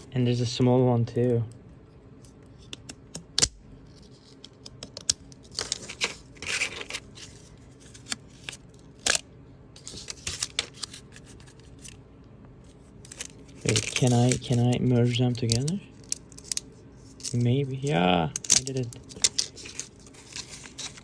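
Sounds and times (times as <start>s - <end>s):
plastic crinkling and scraping: 3.8s - 9.2s, 9.8s - 12.0s, 12.6s - 21.0s.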